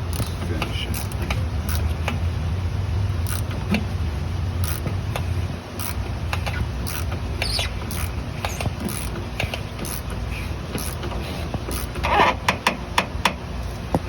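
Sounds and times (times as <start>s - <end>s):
ratchet clicking: 0.0s - 2.2s, 3.2s - 3.9s, 4.6s - 13.4s
metal creaking: 5.8s - 13.8s.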